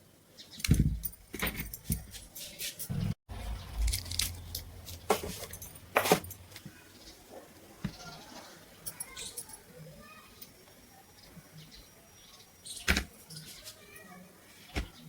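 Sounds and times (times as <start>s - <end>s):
metal tools clinking: 4.5s - 6.5s.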